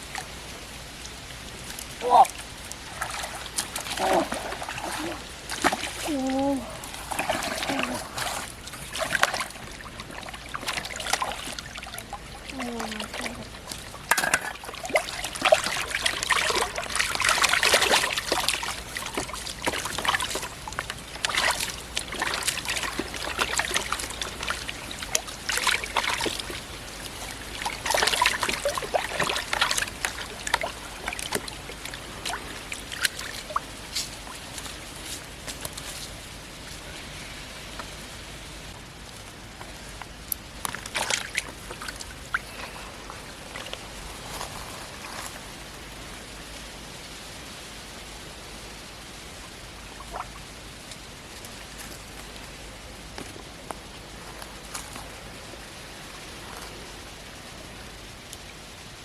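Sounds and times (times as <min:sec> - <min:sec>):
pond water splashing and trickling: 0:00.0 - 0:59.0.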